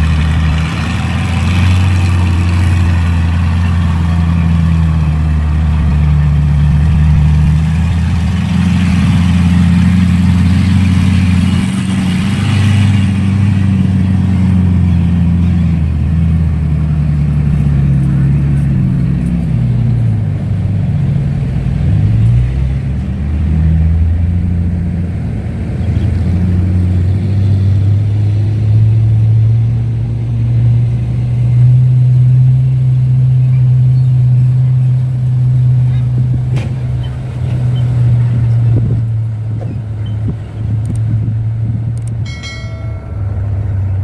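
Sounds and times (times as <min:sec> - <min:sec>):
heavy engine revving: 0:00.0 - 0:42.2.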